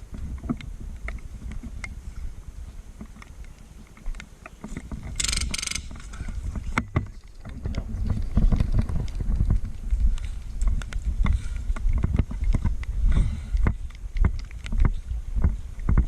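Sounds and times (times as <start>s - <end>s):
wind on microphone: 0.0s - 4.0s, 4.6s - 16.0s
scattered clicks: 3.0s - 6.1s
microphone handling rumble: 4.6s - 16.0s
short rapid rattle: 5.2s - 6.3s.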